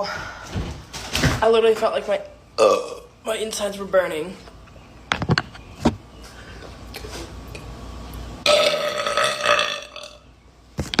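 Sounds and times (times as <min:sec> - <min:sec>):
girl burping: 0:02.6 - 0:03.1, 0:08.5 - 0:10.2.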